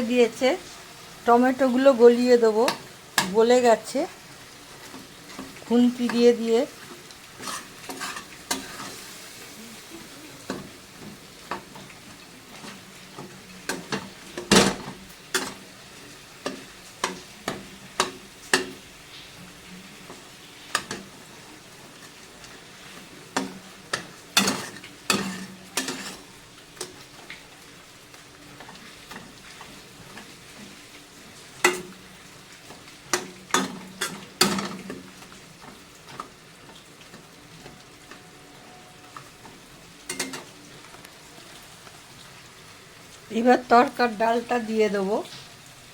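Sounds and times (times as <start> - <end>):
soft sizzle: 0.0 - 45.9
spatula scraping a pan: 4.4 - 27.0, 28.6 - 40.6.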